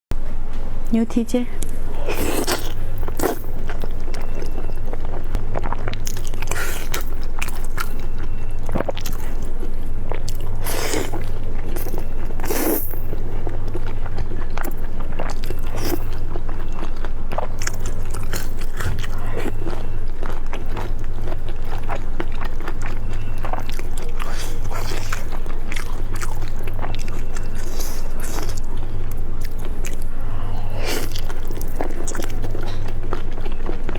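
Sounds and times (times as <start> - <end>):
steady low hum: 0.1 - 33.9
crunching and wet chewing: 1.6 - 33.9.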